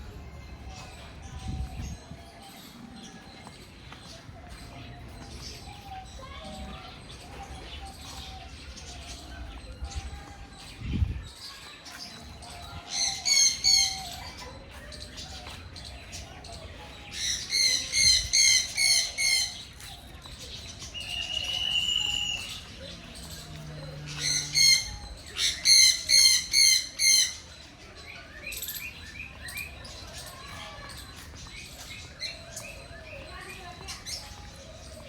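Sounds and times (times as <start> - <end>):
birds chirping: 0.0 - 35.0
birds squawking: 21.0 - 27.5.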